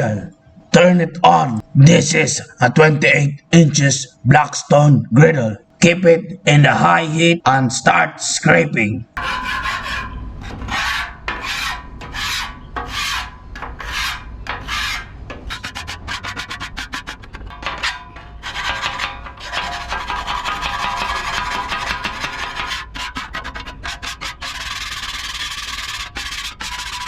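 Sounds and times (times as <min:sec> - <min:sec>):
scraper scraping steel griddle: 0:09.2 - 0:27.0.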